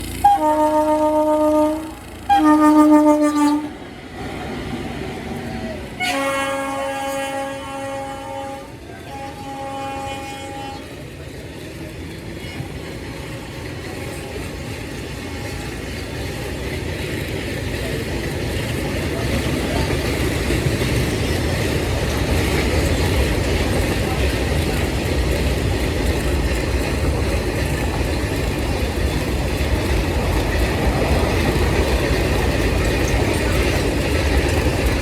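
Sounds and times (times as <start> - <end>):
locomotive horn blasts: 0.1 - 3.8, 6.0 - 11.0
freight wagons rumbling and clattering: 11.1 - 35.0.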